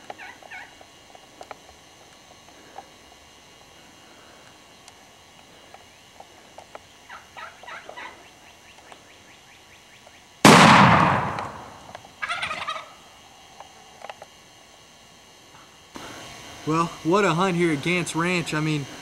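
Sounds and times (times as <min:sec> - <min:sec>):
turkeys gobbling: 0:00.1 - 0:00.8, 0:07.1 - 0:08.3, 0:12.2 - 0:13.0
shotgun blast echoing: 0:10.4 - 0:11.9.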